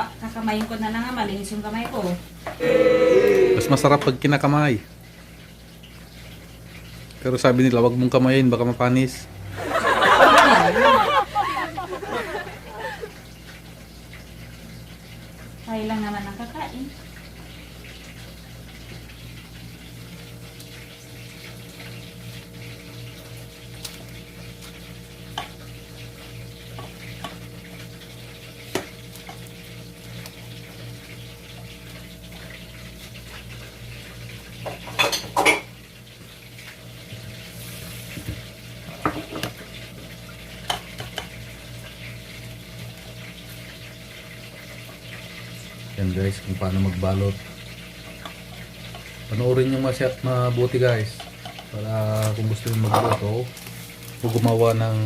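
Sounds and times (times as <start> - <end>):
low appliance hum: 0.0 - 55.0
kitchen utensils and dishes clinking: 34.6 - 35.7, 51.1 - 53.4.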